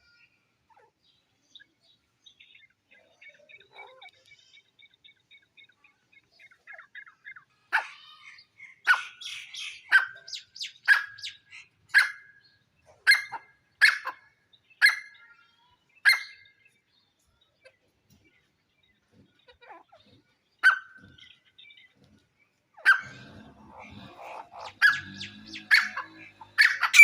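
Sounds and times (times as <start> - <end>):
faint bird chirps: 0.0 - 27.0.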